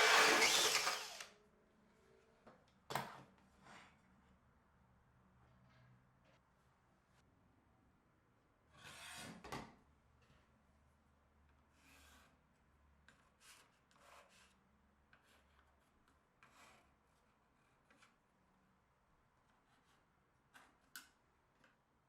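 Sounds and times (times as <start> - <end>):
faint rubbing scrapes on wood: 16.4 - 18.0.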